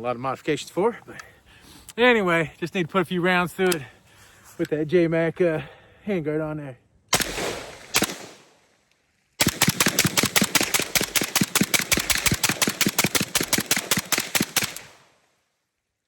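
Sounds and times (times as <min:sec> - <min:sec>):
rifle shots: 0:07.1 - 0:08.6, 0:09.4 - 0:15.1.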